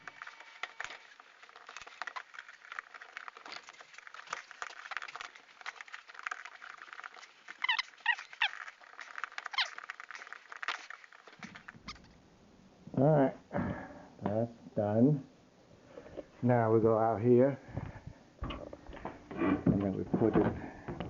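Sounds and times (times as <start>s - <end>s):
clicks and rustling of hose fittings: 17.8s - 21.0s.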